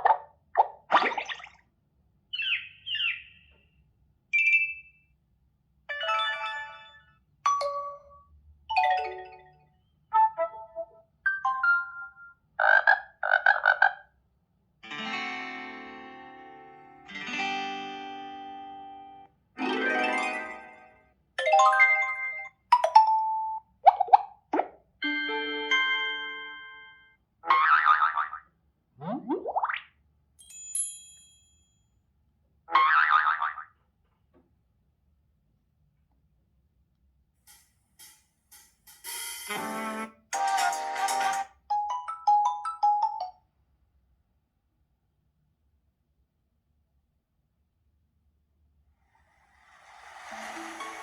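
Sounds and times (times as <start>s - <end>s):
noisy rising sweep: 49.2s - 51.0s.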